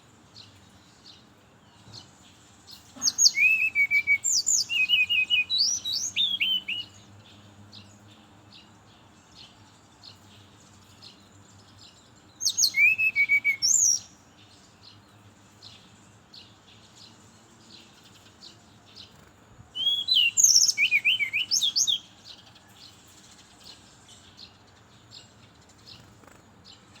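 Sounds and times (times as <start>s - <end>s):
faint soft bird chirps: 0.0s - 27.0s
bird singing whistled notes: 3.0s - 7.2s, 11.0s - 15.0s, 19.0s - 22.4s.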